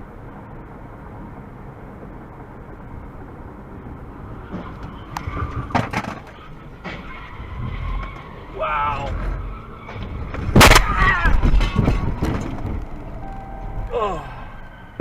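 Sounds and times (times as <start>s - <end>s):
car road and engine noise: 0.0s - 15.0s
vehicle collision bangs: 9.0s - 13.9s.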